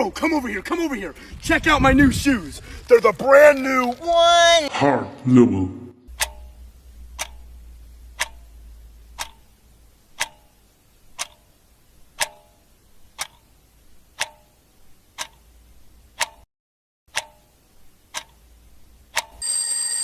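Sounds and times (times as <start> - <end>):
clock ticking: 6.1 - 16.5, 17.1 - 19.4.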